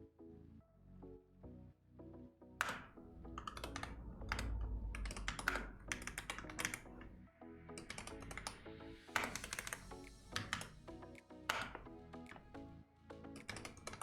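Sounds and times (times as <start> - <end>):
soft background music: 0.0 - 14.0
keyboard typing: 2.6 - 7.1, 7.8 - 10.8, 11.5 - 11.9, 13.3 - 14.0.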